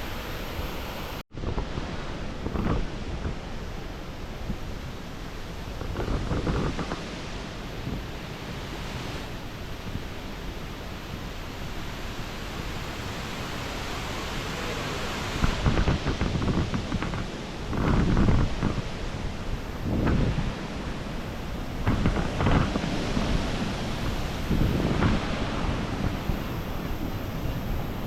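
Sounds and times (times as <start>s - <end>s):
wind buffeting microphone: 0.0s - 28.0s
waterfall rushing: 10.7s - 15.6s.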